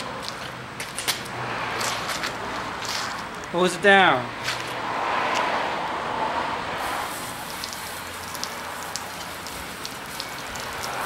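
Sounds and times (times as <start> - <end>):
hose water spattering on metal: 6.8 - 11.0
water dripping: 7.4 - 11.0.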